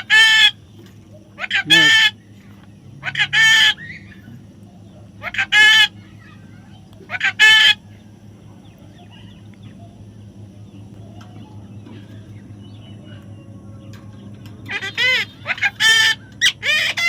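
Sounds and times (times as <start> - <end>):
parrot squawking: 0.0 - 0.6, 1.4 - 2.2, 3.0 - 4.3, 5.2 - 6.4, 7.1 - 7.8, 14.7 - 17.0
low steady hum: 0.0 - 17.0.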